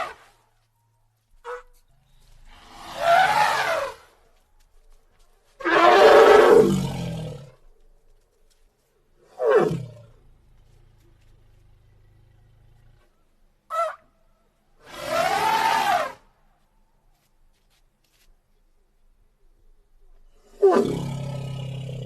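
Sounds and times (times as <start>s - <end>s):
animal roaring: 5.7s - 7.6s, 20.5s - 22.0s.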